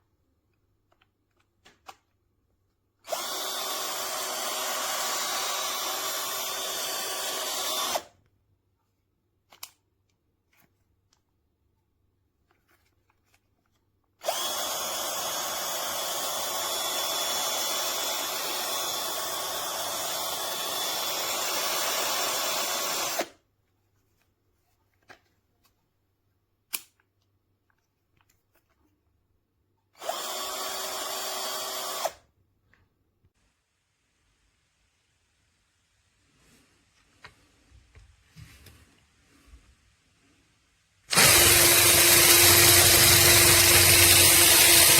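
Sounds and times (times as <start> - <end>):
cordless drill motor running: 3.0 - 8.1, 14.2 - 23.3, 30.0 - 32.2, 41.1 - 44.9
drill clutch click: 3.1 - 8.1, 41.1 - 44.9.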